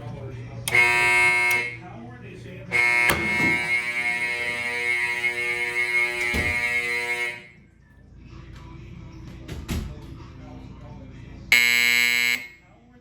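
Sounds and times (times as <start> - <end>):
fire alarm horn buzzing: 0.6 - 2.0, 2.6 - 7.8, 11.5 - 12.8.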